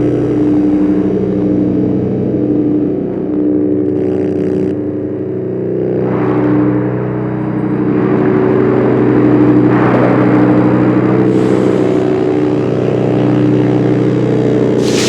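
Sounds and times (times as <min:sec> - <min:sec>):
low drone synthesizer chord: 0:00.0 - 0:15.0
hiss layer: 0:14.8 - 0:15.0.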